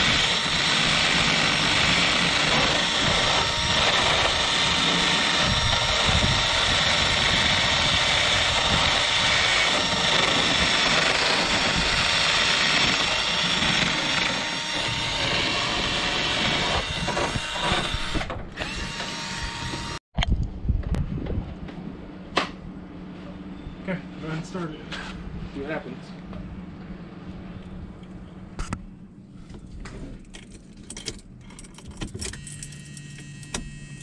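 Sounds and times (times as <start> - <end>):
power tool running: 0.0 - 20.0.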